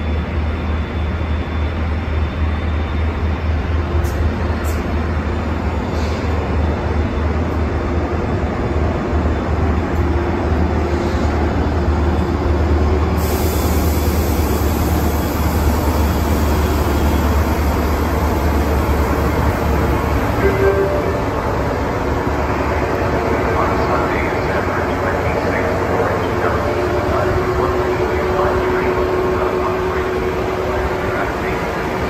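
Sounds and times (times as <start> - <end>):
diesel locomotive rumbling: 0.0 - 32.0
high hiss: 13.2 - 16.8.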